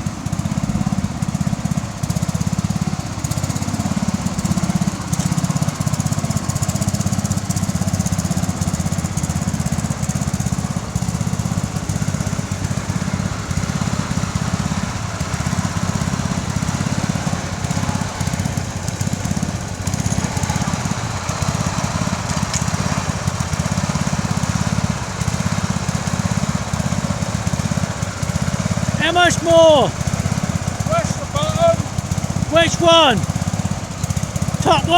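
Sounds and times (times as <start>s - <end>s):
garden tractor engine running: 0.0s - 34.9s.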